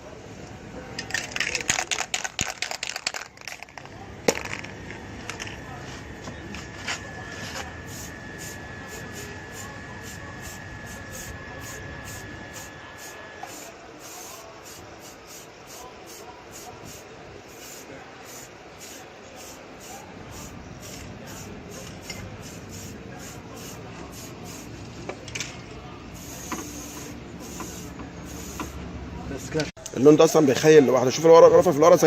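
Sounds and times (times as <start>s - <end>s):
spray paint can hissing: 7.9s - 24.8s, 26.1s - 28.8s.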